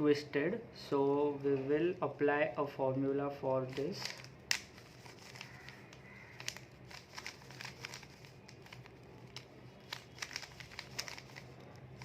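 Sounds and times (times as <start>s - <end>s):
puzzle cube clicking: 3.7s - 12.0s.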